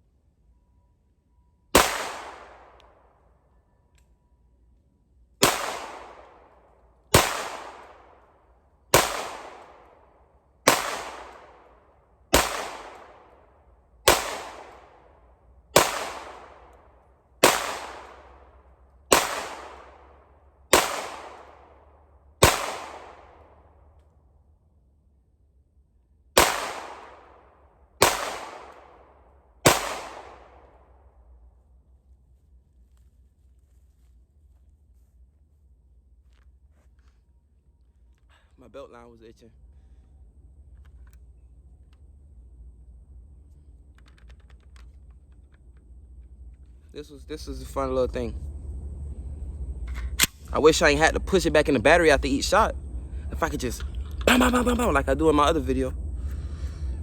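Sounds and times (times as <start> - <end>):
pistol shots with echo: 1.7 - 3.1, 5.4 - 8.3, 8.9 - 18.5, 19.1 - 21.8, 22.4 - 23.6, 26.4 - 31.0.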